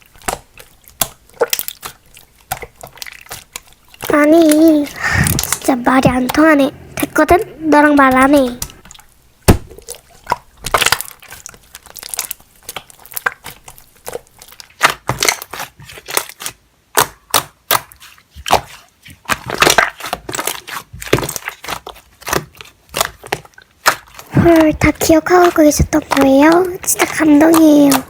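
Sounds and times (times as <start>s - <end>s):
slime squeezed by hand: 4.1s - 7.4s.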